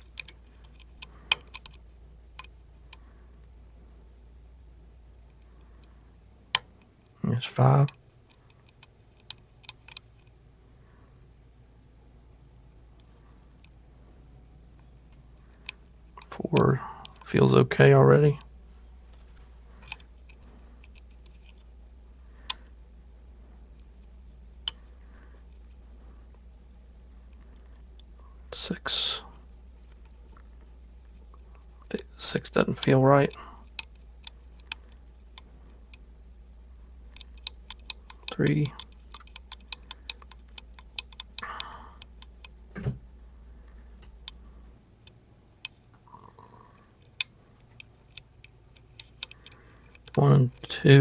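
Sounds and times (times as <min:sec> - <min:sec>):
faint lock pick ticks: 0:37.1 - 0:42.6.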